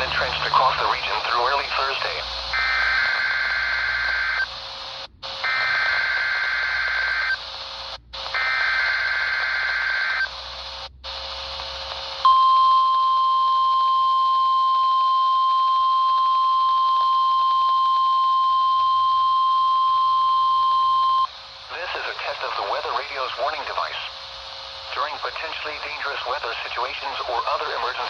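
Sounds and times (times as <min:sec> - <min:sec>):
radio reception hiss: 0:00.0 - 0:12.2, 0:20.0 - 0:28.0
steady warning alarm tone: 0:05.4 - 0:07.4, 0:12.3 - 0:21.3.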